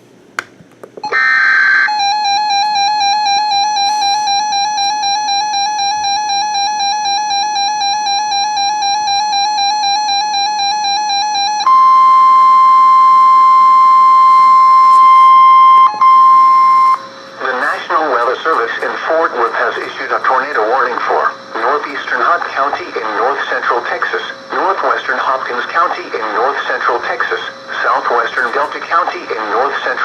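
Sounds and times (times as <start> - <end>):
warbling electronic alarm tone: 1.0 - 18.1
steady single-pitch alarm tone: 1.0 - 28.6
screeching digital data tones: 1.0 - 28.7.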